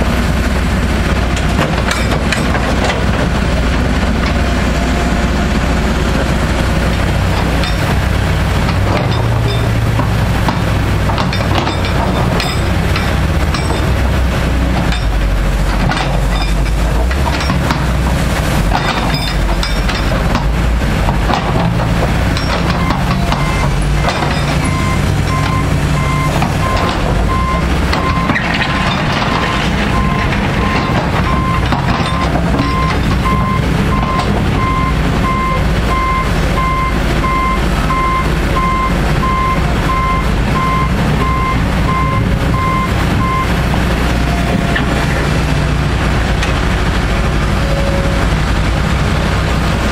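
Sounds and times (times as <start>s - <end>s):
excavator diesel engine running: 0.0s - 49.9s
backup alarm beeping: 22.8s - 29.0s, 29.9s - 43.6s, 47.6s - 48.2s.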